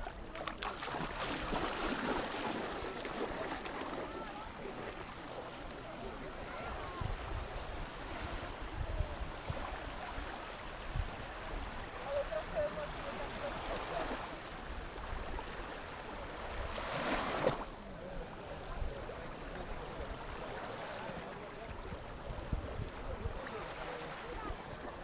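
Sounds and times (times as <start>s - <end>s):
waves washing onto sand: 0.4s - 25.0s
wind on microphone: 6.6s - 12.2s.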